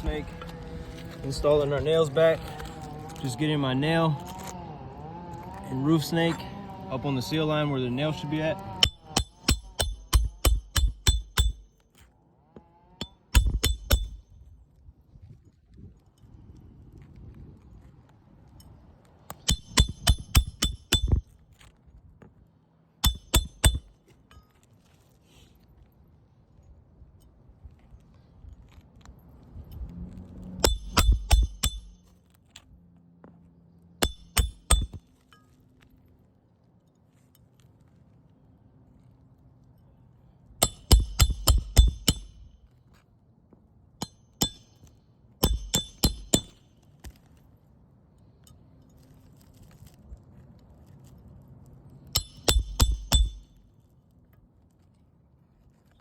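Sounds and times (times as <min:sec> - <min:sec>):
hammer striking metal: 0:08.8 - 0:11.8, 0:13.0 - 0:14.2, 0:19.3 - 0:21.2, 0:23.0 - 0:23.9, 0:30.6 - 0:32.1, 0:34.0 - 0:35.0, 0:40.6 - 0:42.5, 0:44.0 - 0:46.7, 0:52.1 - 0:53.6.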